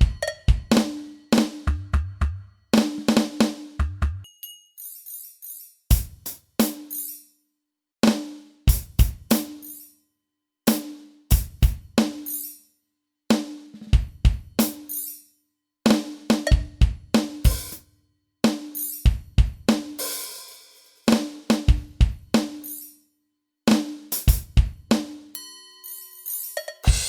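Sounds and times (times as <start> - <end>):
electronic drum fills: 0.0 - 3.6.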